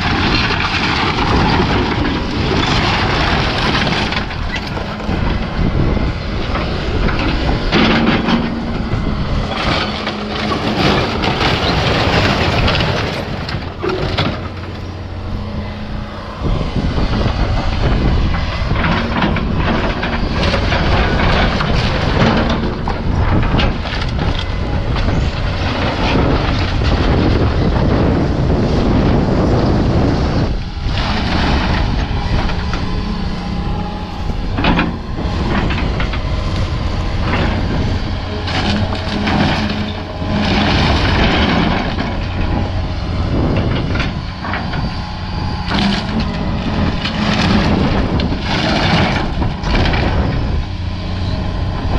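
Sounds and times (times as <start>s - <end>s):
timbers cracking and crunching: 0.0s - 16.6s, 30.5s - 50.3s
heavy equipment engine running: 0.0s - 51.9s.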